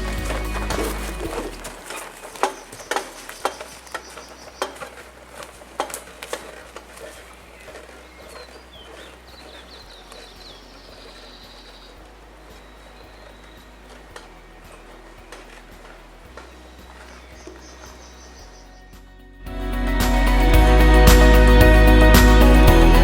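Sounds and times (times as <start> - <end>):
knocks and clatters: 0.0 - 8.0
small bird chirping: 0.0 - 19.0.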